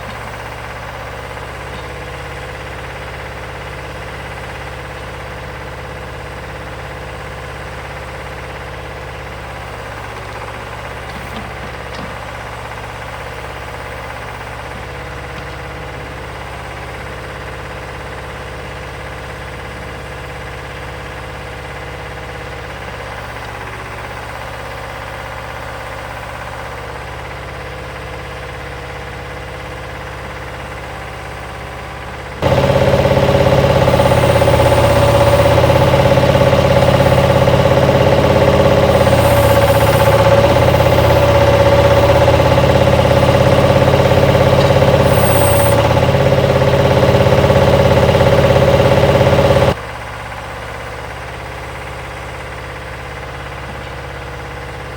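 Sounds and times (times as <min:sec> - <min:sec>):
loader engine running: 0:00.0 - 0:54.9
steady whine: 0:32.4 - 0:49.7.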